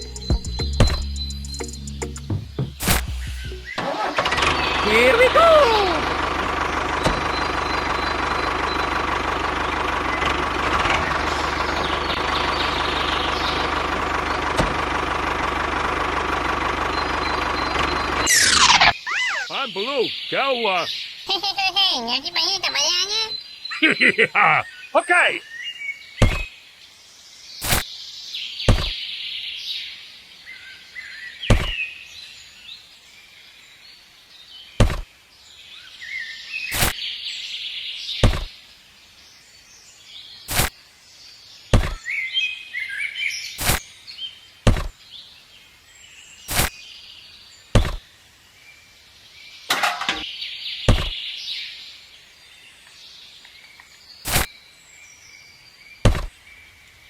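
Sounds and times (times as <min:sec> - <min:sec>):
birds chirping: 0:00.0 - 0:57.0
sharp knocks: 0:26.2 - 0:26.5, 0:28.7 - 0:29.0, 0:31.5 - 0:31.8, 0:34.8 - 0:35.1, 0:38.2 - 0:38.5, 0:41.8 - 0:42.0, 0:44.7 - 0:44.9, 0:47.8 - 0:48.0, 0:50.9 - 0:51.2, 0:56.0 - 0:56.3.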